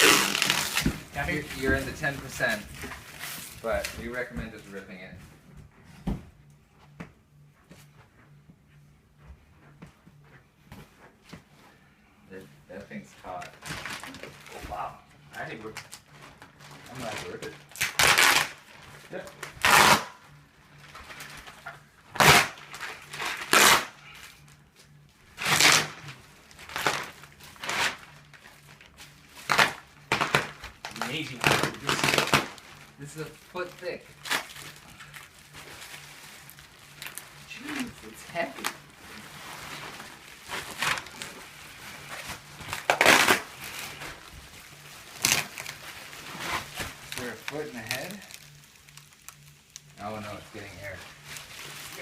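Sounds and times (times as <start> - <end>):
plastic bag tearing: 0.0 - 3.7, 13.3 - 14.7, 15.6 - 20.2, 20.9 - 24.2, 25.4 - 52.0
plastic wrapping rustling: 0.0 - 5.0, 12.7 - 52.0.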